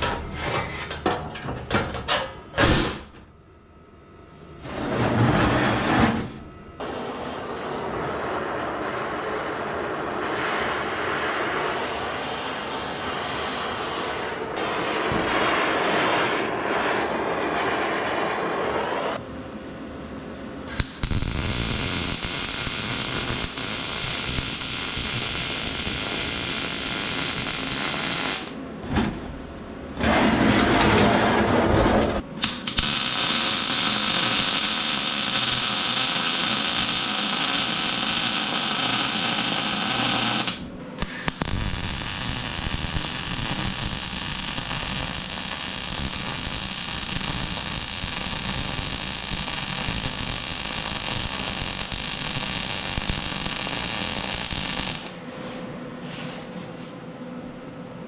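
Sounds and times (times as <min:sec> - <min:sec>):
deeper welding sound: 0:00.0 - 0:03.3, 0:04.6 - 0:19.2, 0:20.7 - 0:28.6, 0:30.0 - 0:55.7
welding arc crackling: 0:20.7 - 0:28.6, 0:32.4 - 0:55.2.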